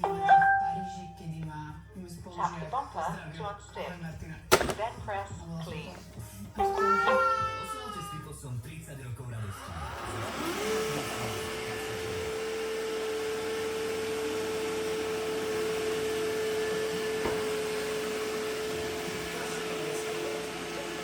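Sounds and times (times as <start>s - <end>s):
robot vacuum motor whine: 9.5s - 21.0s.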